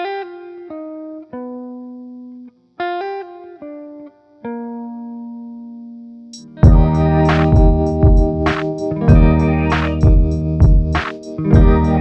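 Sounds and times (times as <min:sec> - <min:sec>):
plucked guitar notes: 0:02.8 - 0:12.0.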